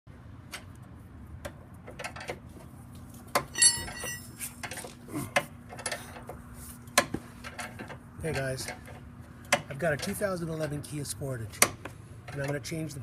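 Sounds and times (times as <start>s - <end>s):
metal objects clicking and knocking: 3.4s - 4.9s
sharp metallic clink: 3.5s - 4.4s.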